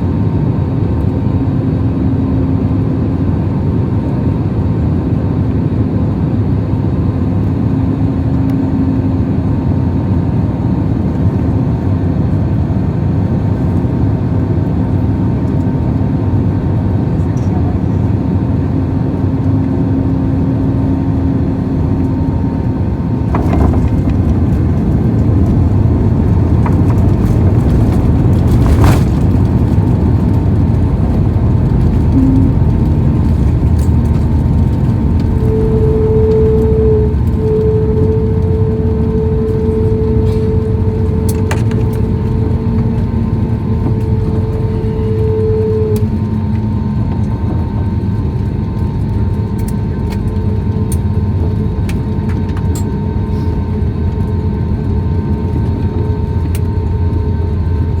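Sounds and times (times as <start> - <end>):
aircraft cabin rumble: 0.0 - 58.0
higher tone: 31.7 - 47.3.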